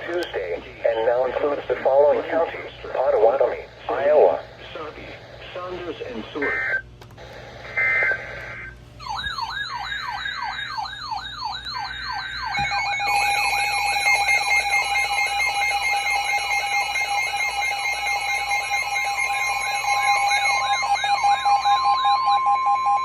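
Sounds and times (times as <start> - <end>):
electronic wailing siren sweep: 7.8 - 23.0.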